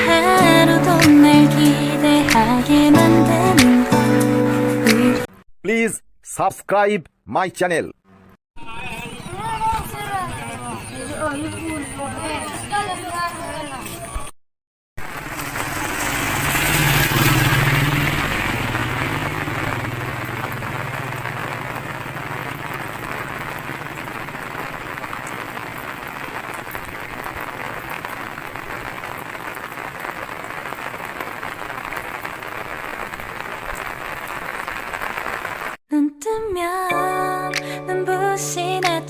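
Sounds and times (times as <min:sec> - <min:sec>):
rain falling: 0:00.0 - 0:05.2, 0:15.0 - 0:35.8.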